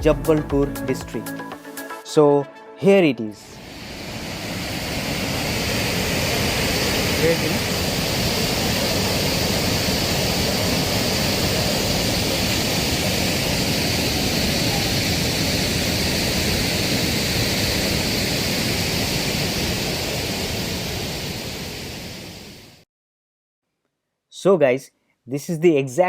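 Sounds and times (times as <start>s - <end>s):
waterfall rushing: 3.6s - 20.9s.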